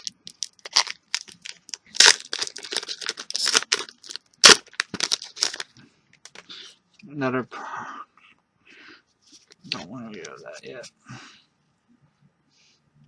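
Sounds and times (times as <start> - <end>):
card pack crinkling and rustling: 0.0 - 6.5.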